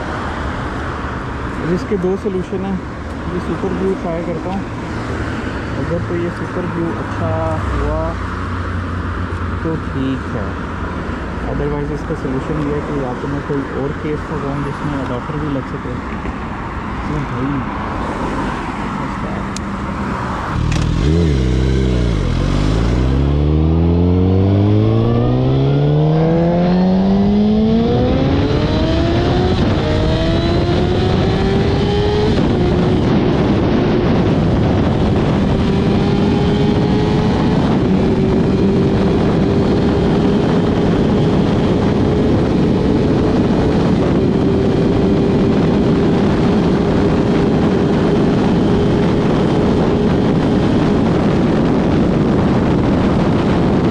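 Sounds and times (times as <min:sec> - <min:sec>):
wind and road noise: 0:00.0 - 0:53.9
motorcycle engine accelerating: 0:19.5 - 0:53.9.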